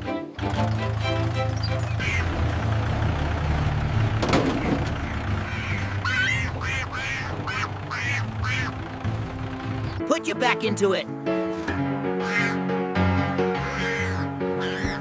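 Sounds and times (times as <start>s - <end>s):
duck quacking: 1.9s - 2.5s, 5.0s - 8.8s, 12.1s - 15.0s.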